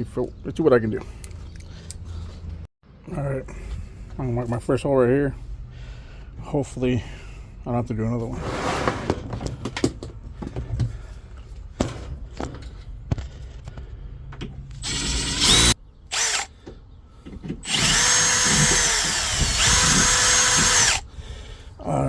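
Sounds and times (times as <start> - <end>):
handling knocks and clicks: 9.1 - 14.8
power drill drilling: 14.8 - 16.5, 17.6 - 21.0.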